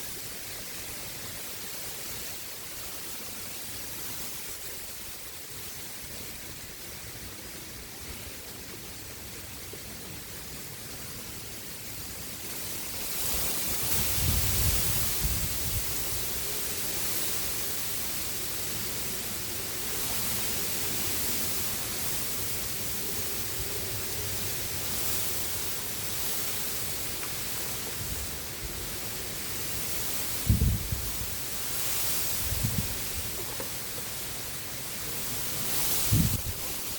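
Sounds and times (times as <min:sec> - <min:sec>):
rushing hiss: 0:10.0 - 0:36.9
wind blowing across microphone: 0:12.7 - 0:33.9, 0:34.5 - 0:36.9.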